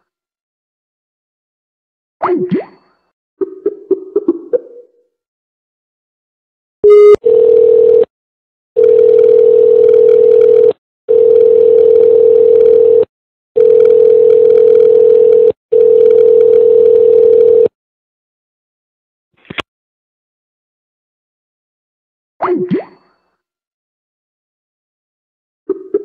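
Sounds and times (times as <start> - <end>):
telephone beep: 6.8 - 8.1, 8.8 - 17.7
telephone dial tone: 6.8 - 8.1, 8.8 - 17.7.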